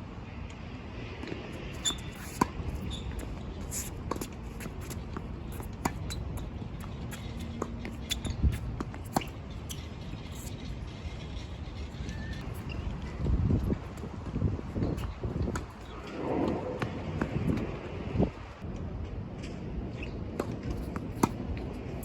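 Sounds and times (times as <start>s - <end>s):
wind rumble on microphone: 0.0s - 22.0s
tennis ball bounces: 1.2s - 10.8s.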